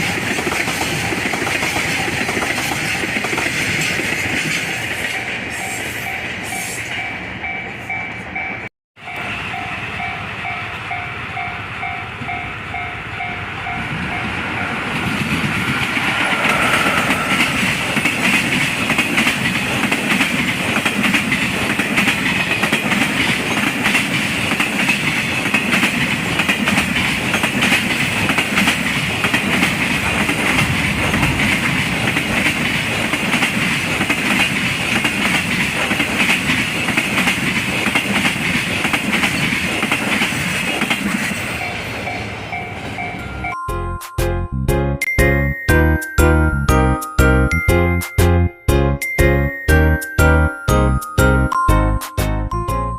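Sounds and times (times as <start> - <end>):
level-crossing warning bell: 5.0 - 15.0, 41.4 - 52.9
train wheels clattering: 15.0 - 41.8.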